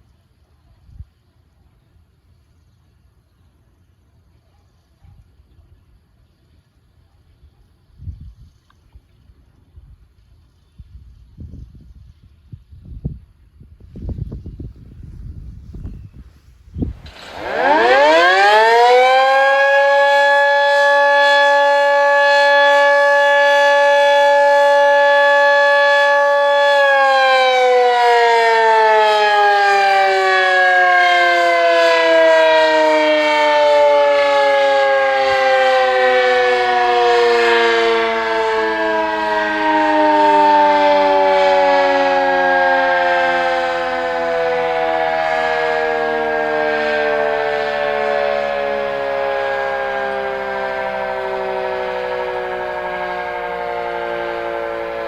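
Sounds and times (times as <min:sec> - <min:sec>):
siren winding up and down: 0:17.1 - 0:55.0.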